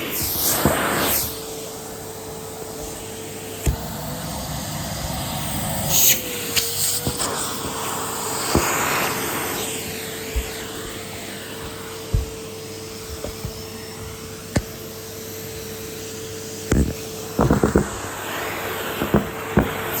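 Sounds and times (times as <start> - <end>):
vacuum cleaner humming: 0.0 - 20.0
sharp knocks: 19.0 - 19.9.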